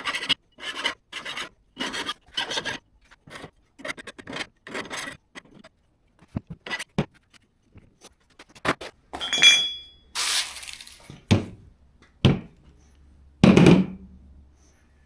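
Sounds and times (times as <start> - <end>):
ringing clink: 9.2 - 10.1
metal tools clinking: 9.2 - 11.1.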